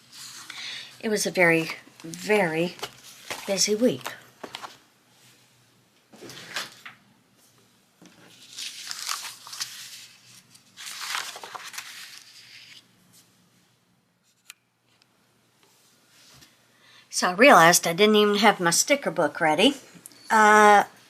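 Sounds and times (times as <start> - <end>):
paper rustling and crinkling: 2.0 - 4.8, 8.0 - 12.9.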